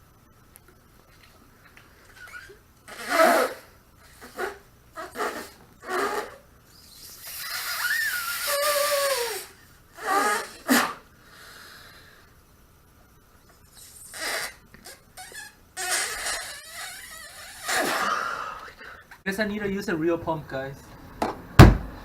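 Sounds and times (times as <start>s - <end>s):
hard puffs of breath into balloon: 2.0s - 12.4s, 13.7s - 19.1s
squeaky balloon tone: 2.1s - 11.0s, 13.7s - 18.2s.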